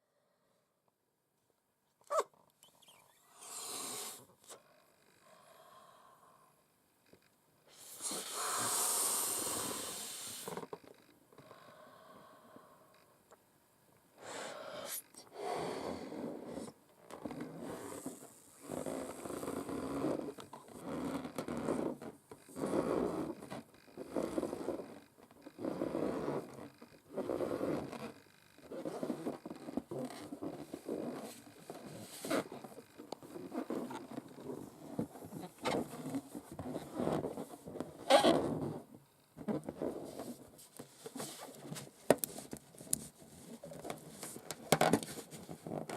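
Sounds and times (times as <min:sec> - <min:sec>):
nails scratching on balloon: 0:07.7 - 0:11.1, 0:15.6 - 0:45.9.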